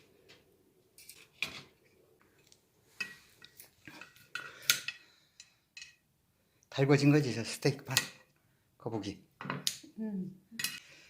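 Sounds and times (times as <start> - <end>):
metal utensils clattering on cookware: 10.6 - 10.8.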